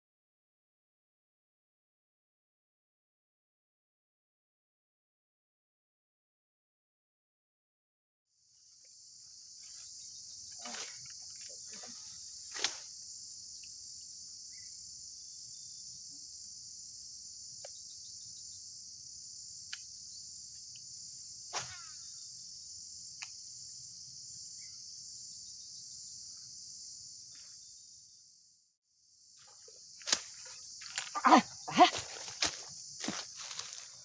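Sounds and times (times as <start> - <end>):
high-pitched insect chorus: 8.3 - 34.0.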